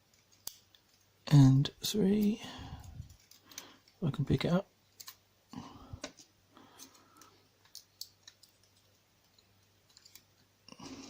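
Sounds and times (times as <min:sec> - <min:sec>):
tiny metal parts clicking: 0:00.1 - 0:01.1, 0:03.0 - 0:04.0, 0:06.8 - 0:10.4.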